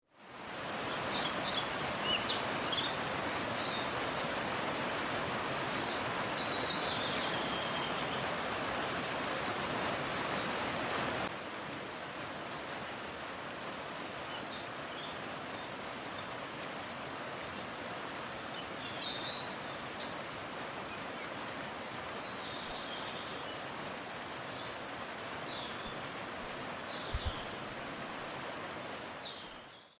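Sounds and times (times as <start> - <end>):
mountain stream rushing: 0.2 - 30.0
small birds chirping: 5.3 - 8.3, 24.5 - 27.6, 28.6 - 30.0.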